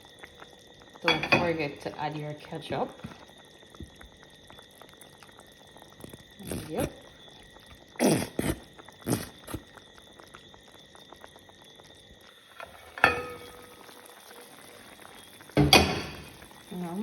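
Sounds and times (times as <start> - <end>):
ketchup bottle sputtering squirts: 8.0 - 9.6.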